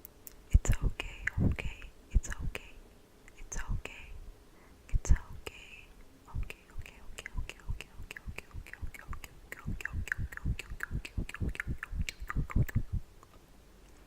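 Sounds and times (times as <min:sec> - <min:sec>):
wet mouth clicks: 0:00.2 - 0:01.5, 0:06.5 - 0:13.4.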